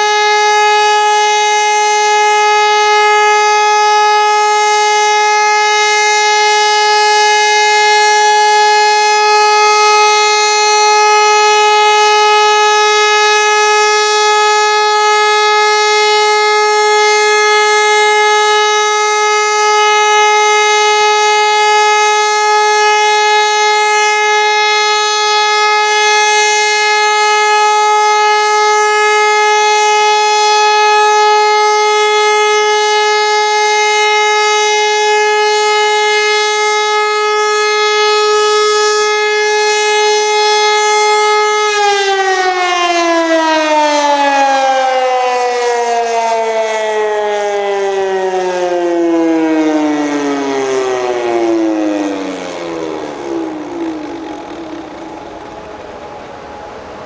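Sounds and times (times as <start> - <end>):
siren steady tone: 0.0 - 57.0
siren winding down: 0.0 - 57.0.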